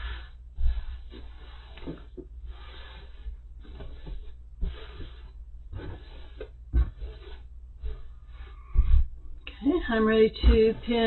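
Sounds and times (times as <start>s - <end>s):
soft low bumps: 3.2s - 11.0s.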